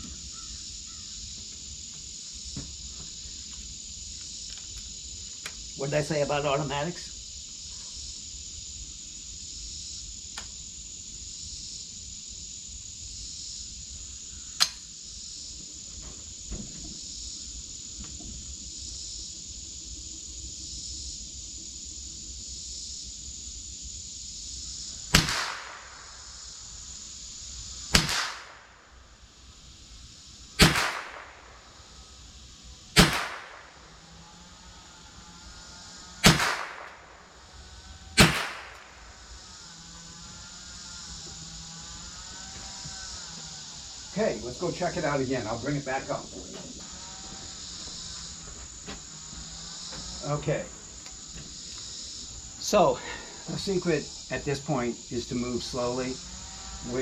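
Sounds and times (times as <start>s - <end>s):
insect chirring: 0.0s - 57.0s
rifle shots: 25.1s - 26.3s, 27.9s - 28.8s, 30.6s - 31.7s, 33.0s - 34.0s, 36.2s - 37.2s, 38.2s - 39.2s.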